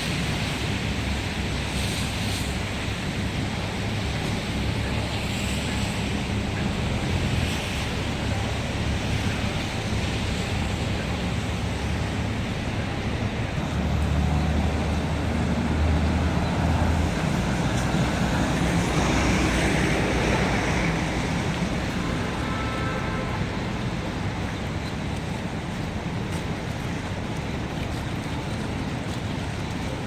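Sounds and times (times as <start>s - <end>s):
low engine hum: 0.0s - 30.0s
passing cars: 0.0s - 30.0s
vehicle going by: 13.6s - 24.4s.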